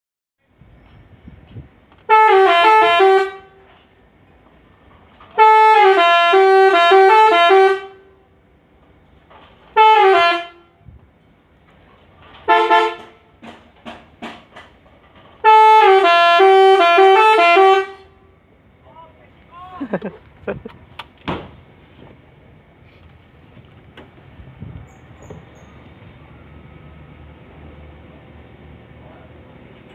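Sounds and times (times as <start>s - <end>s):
musical bus horn playing tunes: 2.0s - 3.8s, 5.3s - 8.3s, 9.7s - 10.9s, 12.4s - 13.4s, 15.4s - 18.4s.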